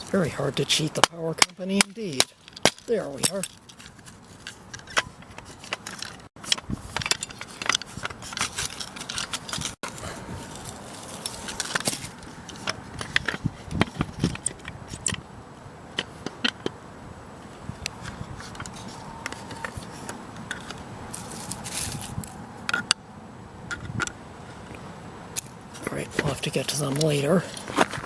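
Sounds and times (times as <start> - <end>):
small metal parts clicking: 0.8 - 9.9.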